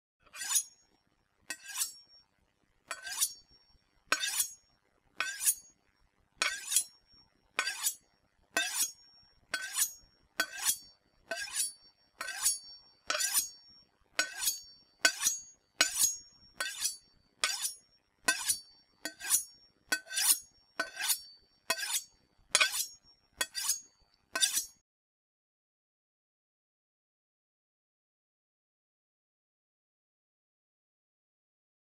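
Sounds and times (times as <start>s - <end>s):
knife sharpening strokes: 0.3s - 0.8s, 1.5s - 2.1s, 2.9s - 3.5s, 4.1s - 4.6s, 5.2s - 5.7s, 6.4s - 7.0s, 7.6s - 8.0s, 8.6s - 13.6s, 14.2s - 24.8s.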